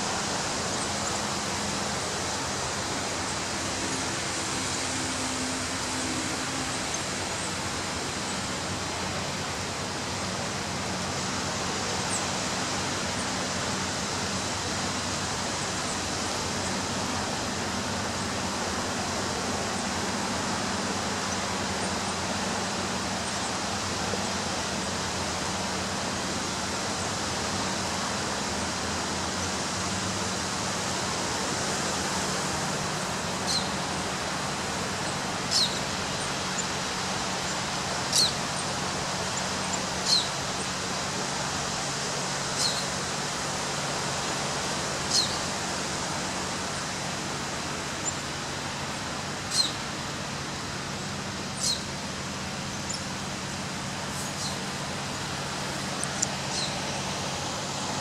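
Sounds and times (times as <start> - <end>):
high bird chirps: 49.5 - 49.8, 51.6 - 51.9.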